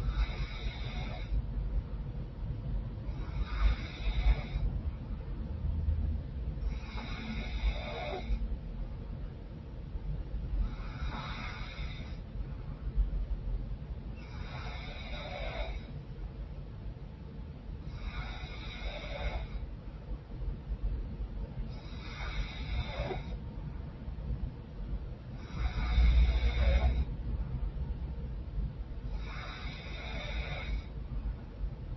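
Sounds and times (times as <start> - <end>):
woman snoring: 0.0 - 1.4, 3.2 - 4.6, 6.7 - 8.4, 10.8 - 12.2, 14.2 - 15.9, 17.9 - 19.6, 21.8 - 23.3, 25.4 - 27.1, 29.2 - 30.9.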